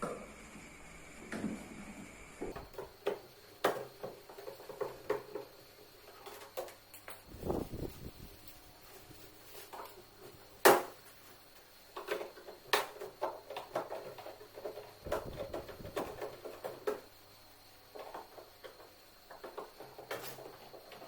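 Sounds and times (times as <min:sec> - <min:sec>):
knocks and clatter of tools: 0:02.5 - 0:07.3, 0:11.9 - 0:17.1, 0:17.9 - 0:21.0.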